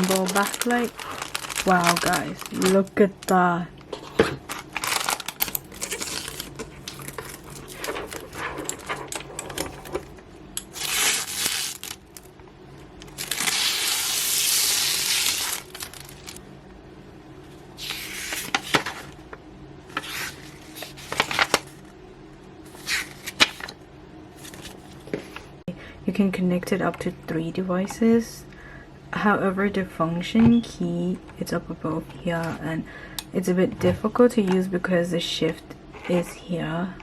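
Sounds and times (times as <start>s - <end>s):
packaging rustling: 0.0s - 12.3s, 13.0s - 16.4s, 17.8s - 19.2s, 19.9s - 21.9s, 22.7s - 23.8s, 24.4s - 25.5s.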